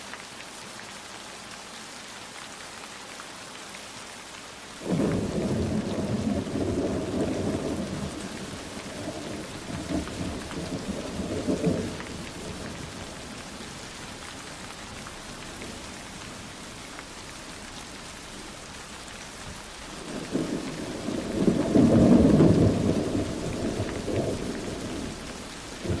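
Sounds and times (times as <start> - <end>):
steady rain falling: 0.0 - 26.0
thunder rumbling: 4.8 - 13.7, 20.0 - 26.0.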